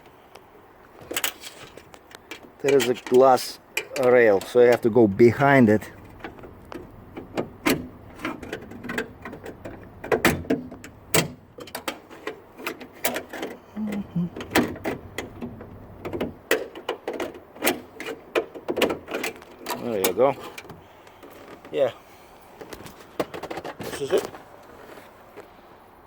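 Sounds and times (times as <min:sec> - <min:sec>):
wire hook scraping in car door: 0:06.0 - 0:13.6.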